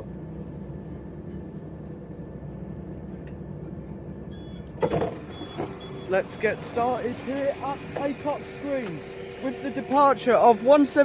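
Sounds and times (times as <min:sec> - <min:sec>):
diesel train engine idling: 0:00.0 - 0:11.0
short high beep: 0:05.3 - 0:06.2.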